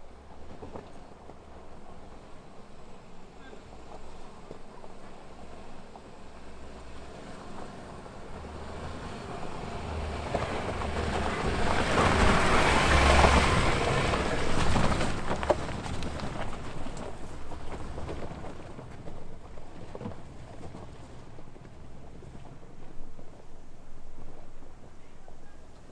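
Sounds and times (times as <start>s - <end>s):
off-road vehicle driving through mud: 0.1s - 23.3s.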